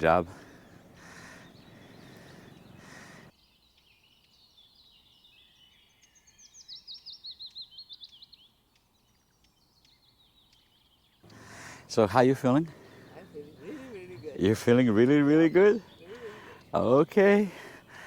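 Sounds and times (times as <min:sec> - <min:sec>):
faint steady rushing: 0:00.0 - 0:03.3, 0:11.3 - 0:18.0
songbirds singing: 0:00.0 - 0:18.0.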